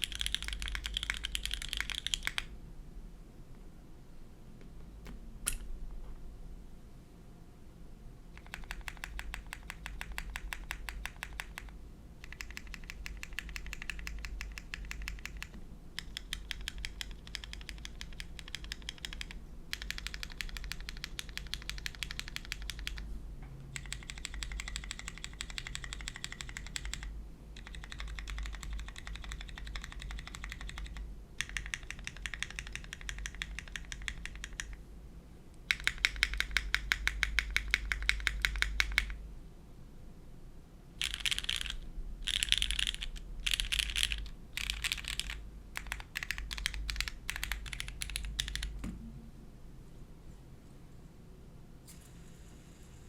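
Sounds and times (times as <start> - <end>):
mechanical keyboard typing: 0.0 - 2.5, 8.3 - 23.0, 23.7 - 34.8, 35.6 - 39.2, 41.0 - 48.8.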